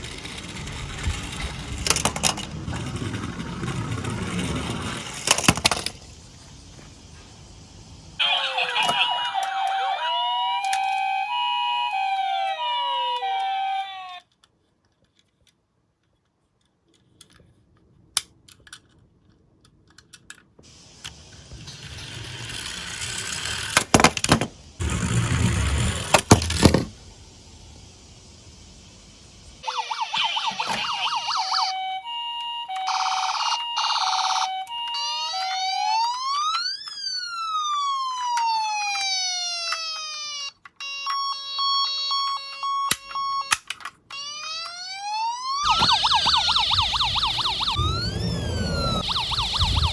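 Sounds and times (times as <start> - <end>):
toy car rolling and rattling: 0.0 - 6.4, 8.5 - 27.0, 32.3 - 48.0
electronic siren wailing: 8.2 - 14.2, 29.6 - 49.9.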